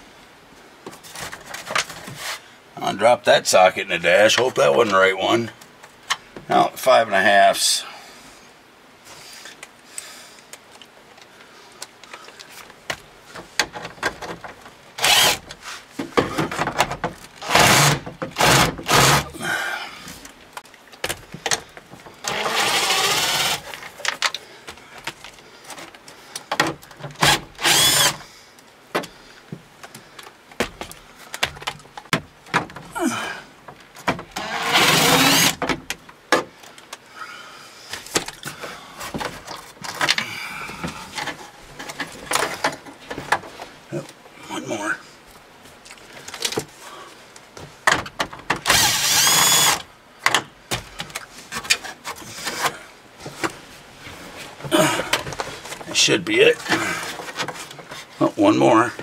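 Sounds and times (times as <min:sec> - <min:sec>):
cordless drill spinning out screws: 0:15.0 - 0:15.5, 0:17.4 - 0:19.3, 0:22.2 - 0:23.7, 0:27.2 - 0:28.2, 0:34.4 - 0:35.6, 0:48.6 - 0:49.9.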